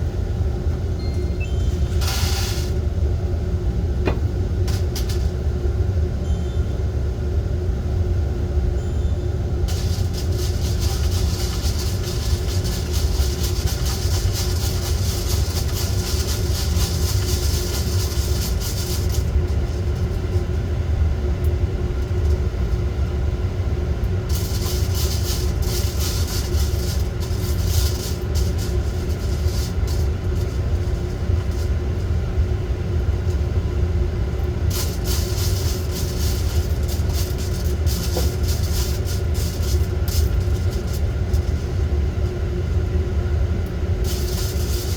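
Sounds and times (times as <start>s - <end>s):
coffee roaster rumble and hum: 0.0s - 44.9s
high crackling hiss: 9.7s - 19.6s, 24.3s - 31.8s, 34.6s - 41.5s, 44.0s - 44.9s.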